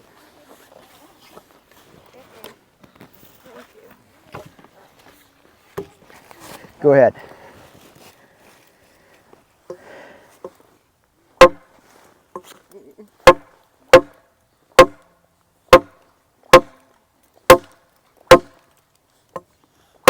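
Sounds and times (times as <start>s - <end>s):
machete chopping wood: 11.4s - 11.6s, 13.2s - 14.2s, 14.8s - 15.0s, 15.7s - 16.8s, 17.5s - 18.6s.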